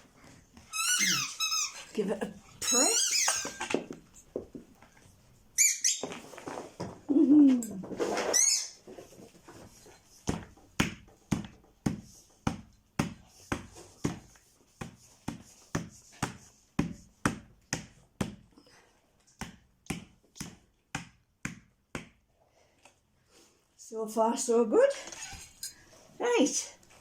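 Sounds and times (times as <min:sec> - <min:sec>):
high squeal: 0:00.7 - 0:01.8.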